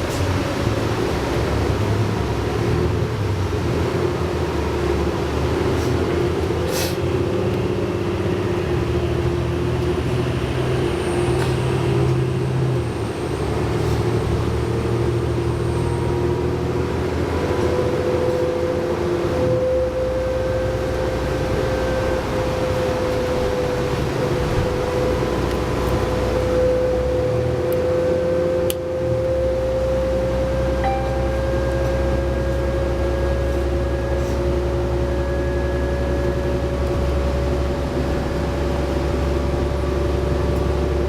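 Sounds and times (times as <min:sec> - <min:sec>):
diesel bus engine drone: 0:00.0 - 0:41.0
higher climbing tone: 0:30.6 - 0:35.0.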